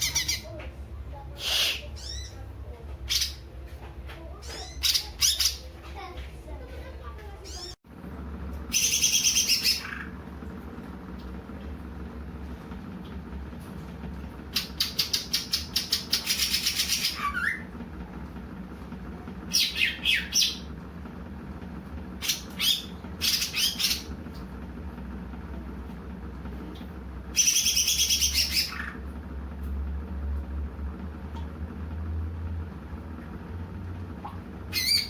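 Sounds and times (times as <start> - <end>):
steady low hum: 0.0 - 35.0
bird singing high phrases: 8.7 - 10.1.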